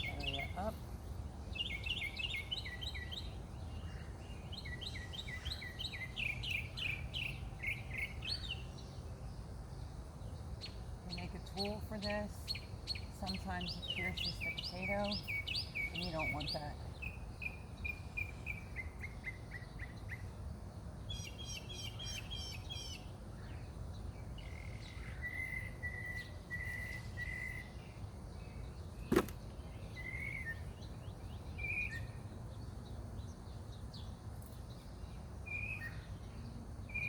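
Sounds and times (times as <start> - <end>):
low background hum: 0.0 - 37.0
songbirds singing and chirping: 0.0 - 37.0.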